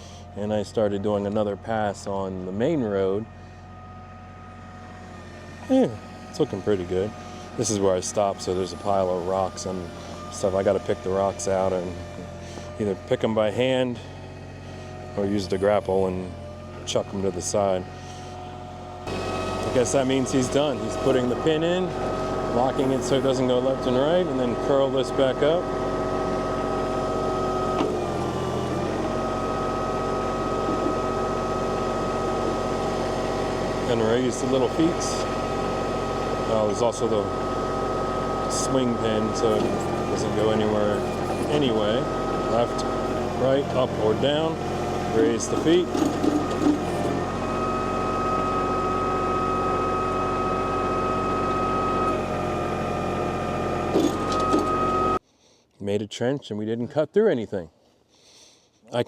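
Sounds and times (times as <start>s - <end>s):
tractor diesel engine running: 0.0s - 55.2s
steady high whine: 19.0s - 25.7s, 27.6s - 44.6s.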